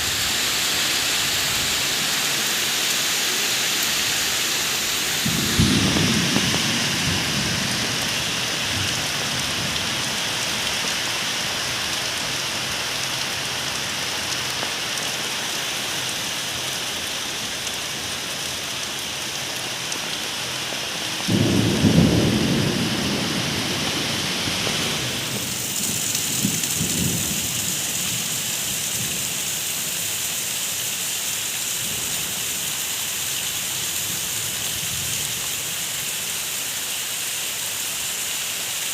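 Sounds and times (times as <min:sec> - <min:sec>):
steady rain: 0:00.0 - 0:38.9
thunder rumbling: 0:04.7 - 0:10.1, 0:21.2 - 0:29.3.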